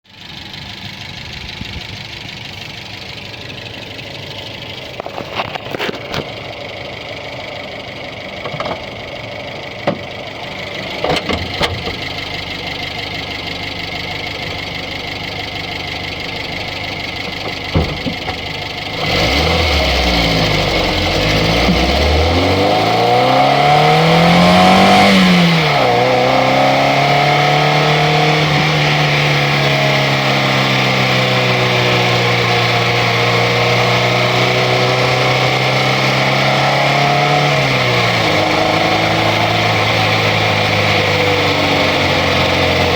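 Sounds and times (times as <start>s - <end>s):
car engine running and revving: 0.0s - 42.9s.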